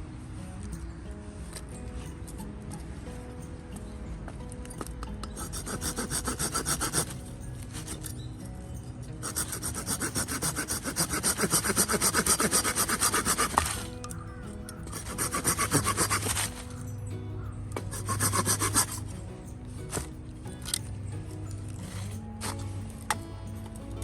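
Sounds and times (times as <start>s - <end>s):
hand saw cutting wood: 5.4s - 8.1s, 9.2s - 14.0s, 14.9s - 16.9s, 17.8s - 19.1s, 21.8s - 22.7s.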